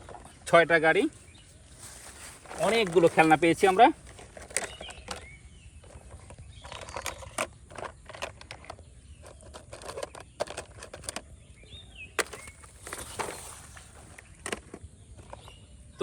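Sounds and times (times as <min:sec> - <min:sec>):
plastic toys clicking and knocking: 0:02.5 - 0:11.4, 0:12.2 - 0:15.6.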